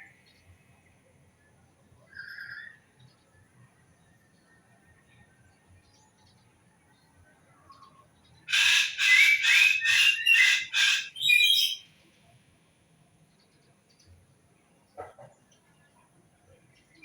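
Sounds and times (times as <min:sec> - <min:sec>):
bird harsh calls: 0:08.5 - 0:11.8.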